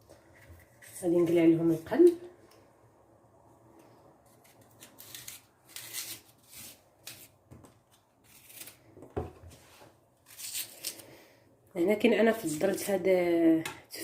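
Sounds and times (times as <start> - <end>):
knife cutting apple: 0.2 - 2.2, 4.2 - 9.3, 10.2 - 11.1.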